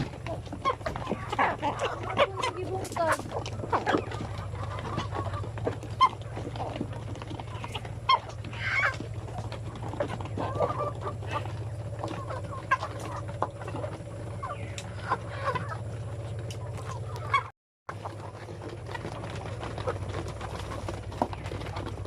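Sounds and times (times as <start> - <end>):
chickens clucking and calling: 0.0 - 22.0
steady low hum: 0.0 - 22.0.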